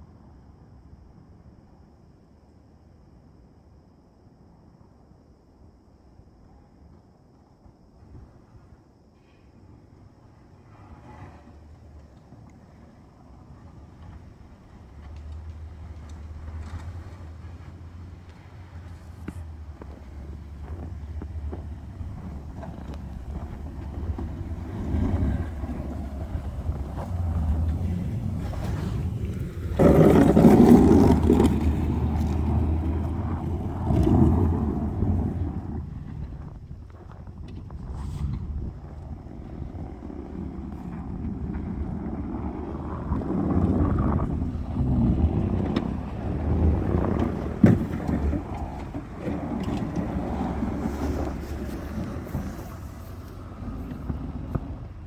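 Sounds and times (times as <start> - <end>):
plow scraping snow: 10.6 - 55.0
pickup truck engine running: 11.5 - 55.0.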